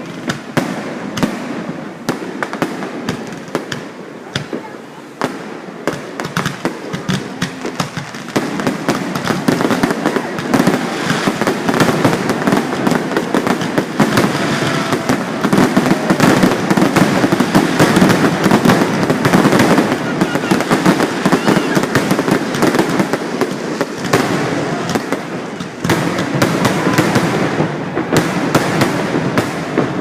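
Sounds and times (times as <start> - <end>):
fireworks bangs and crackles: 0.0 - 30.0.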